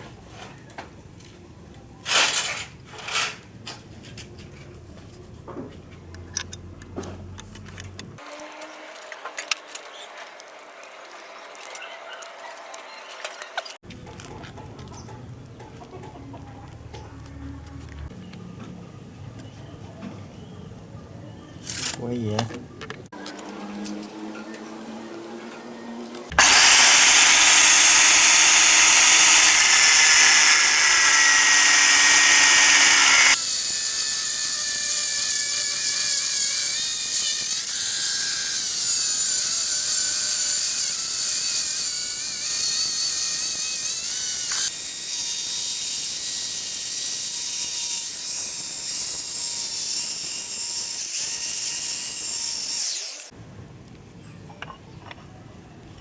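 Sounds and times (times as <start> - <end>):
electric power tool running: 26.3 - 36.8, 38.7 - 44.8.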